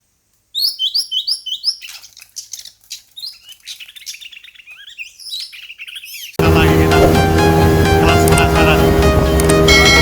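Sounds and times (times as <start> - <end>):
bird singing whistled notes and trills: 0.5 - 6.4.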